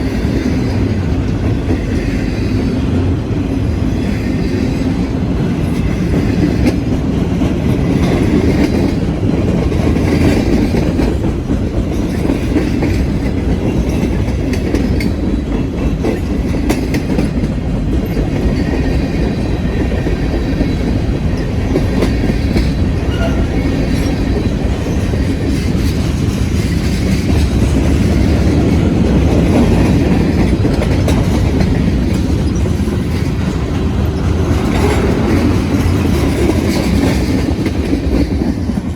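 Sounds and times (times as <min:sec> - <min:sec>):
train wheels rumbling on rails: 0:00.0 - 0:38.9.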